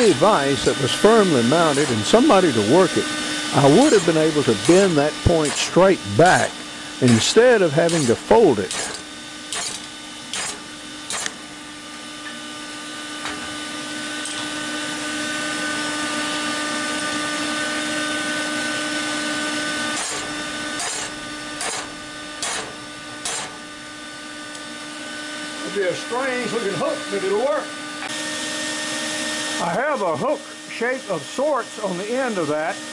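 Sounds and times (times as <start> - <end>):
steady hum: 0.0 - 32.9
hammer striking hot steel: 6.4 - 11.4, 19.9 - 23.7.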